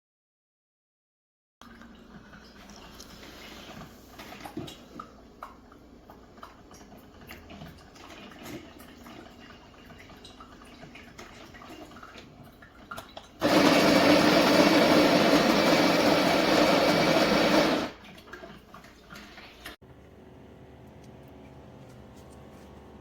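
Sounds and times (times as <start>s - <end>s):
coffee grinder motor running: 13.4s - 18.0s.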